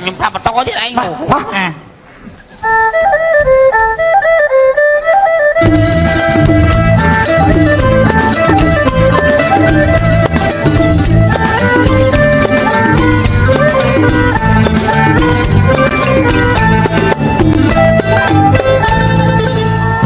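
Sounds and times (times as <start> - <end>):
quick melody: 2.6 - 20.0
steady drum beat: 5.6 - 20.0.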